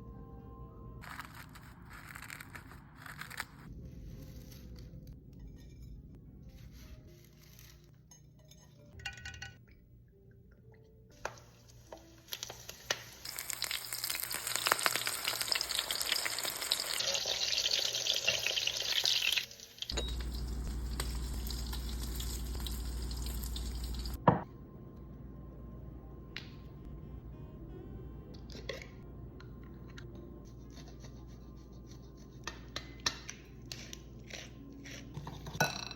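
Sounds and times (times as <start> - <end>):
chicken sizzling in hot oil: 11.4 - 24.2
steady low hum: 20.0 - 28.3.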